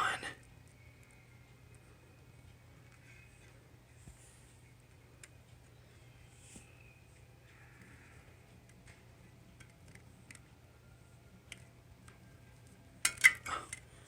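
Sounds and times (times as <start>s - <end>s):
small plastic clicks: 8.6s - 10.6s.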